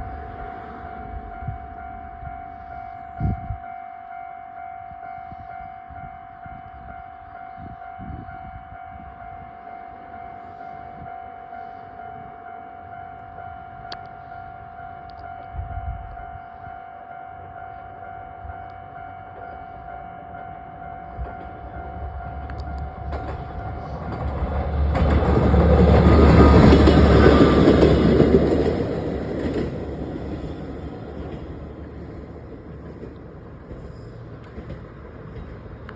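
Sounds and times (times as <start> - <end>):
train rumble and wheel noise: 0.0 - 35.9.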